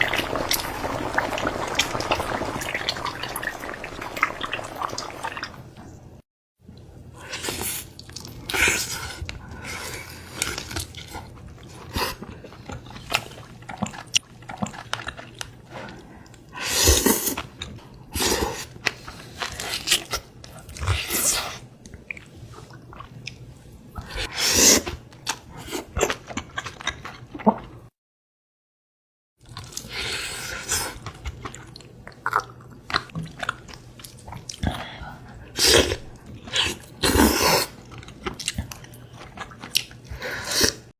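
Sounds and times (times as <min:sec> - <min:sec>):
person chewing and crunching food: 0:07.3 - 0:27.9, 0:29.4 - 0:40.9.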